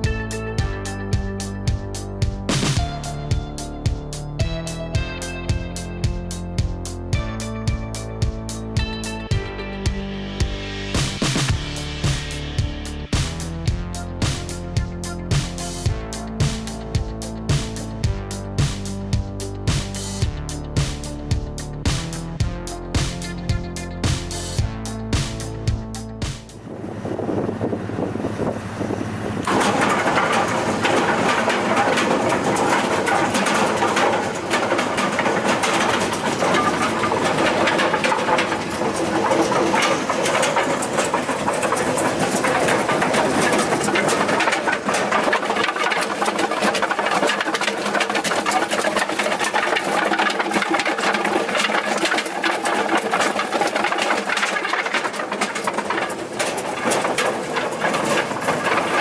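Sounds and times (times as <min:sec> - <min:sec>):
wood chipper running: 0:09.4 - 0:25.7, 0:29.1 - 0:59.0.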